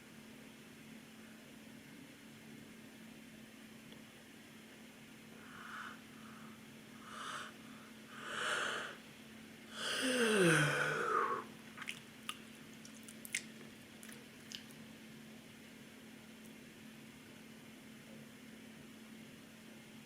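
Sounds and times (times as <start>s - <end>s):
woman breathing: 5.3s - 9.0s, 9.7s - 11.5s
woman yawning: 9.8s - 11.5s
mouth clicks and lip smacks: 11.8s - 14.8s.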